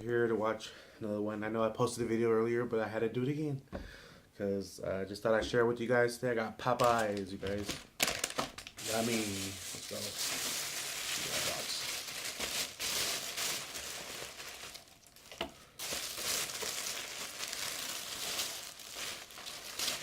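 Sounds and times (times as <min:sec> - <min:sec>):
food packaging rustling: 0:06.8 - 0:20.0.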